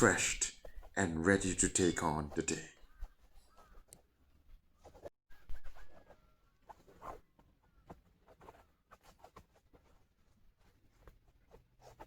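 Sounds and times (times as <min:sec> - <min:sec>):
faint soft clicks and rustles: 0:02.7 - 0:12.0.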